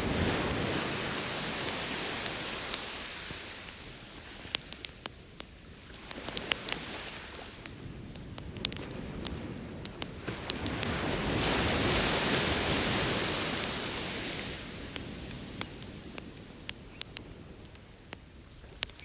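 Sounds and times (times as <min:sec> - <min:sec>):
ocean wave: 0:00.0 - 0:17.8
bonfire crackling and popping: 0:00.0 - 0:19.0.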